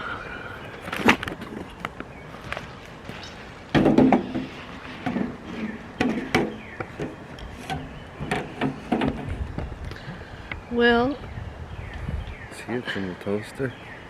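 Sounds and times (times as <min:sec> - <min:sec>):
camp kitchen gear knocking: 0:03.7 - 0:05.3, 0:06.0 - 0:09.4.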